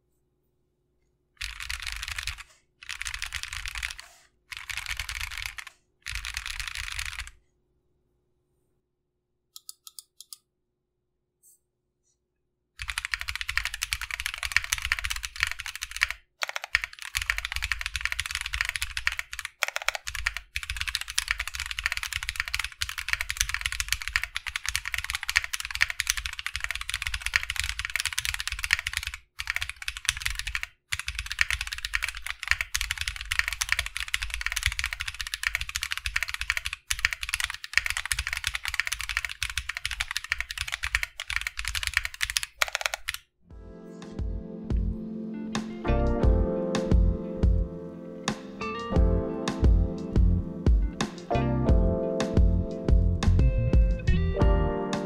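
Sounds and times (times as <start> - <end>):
typing on mechanical keyboard: 1.4 - 7.4, 12.8 - 43.2.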